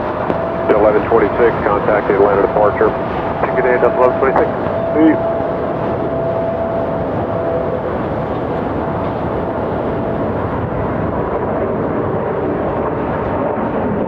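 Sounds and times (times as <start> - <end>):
faint jet engine whine: 0.0 - 14.0
jet airliner taking off: 0.0 - 14.0.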